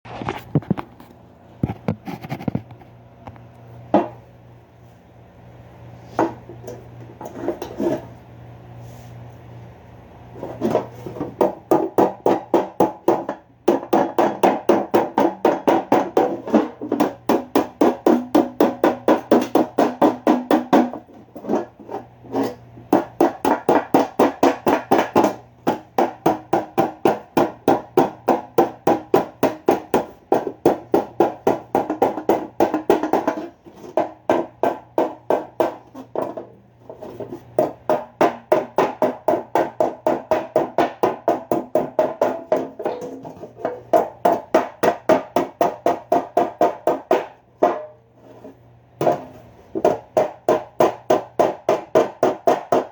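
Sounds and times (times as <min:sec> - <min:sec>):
hammer on metal pan: 0:11.4 - 0:21.1, 0:22.9 - 0:36.5, 0:37.6 - 0:48.0, 0:49.0 - 0:52.9.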